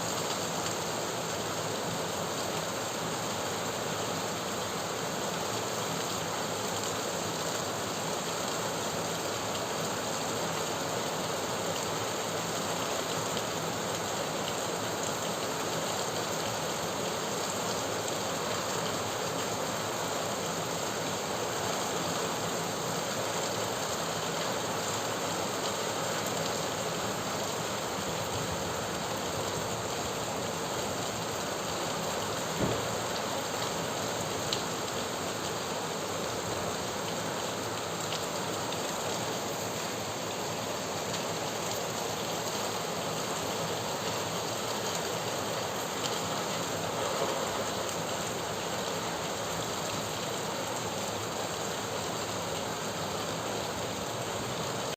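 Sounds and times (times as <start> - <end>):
rain pattering on surfaces: 0.0 - 54.9
short knock: 32.6 - 32.9.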